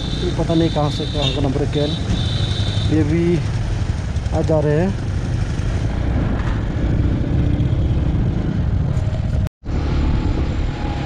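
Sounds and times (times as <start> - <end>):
motorcycle engine running: 0.0 - 9.9
riding wind noise on microphone: 5.0 - 11.0.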